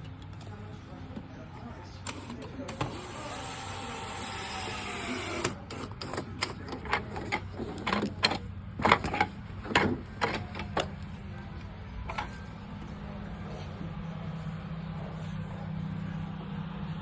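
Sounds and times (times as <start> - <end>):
power drill-driver whining: 2.8 - 6.0.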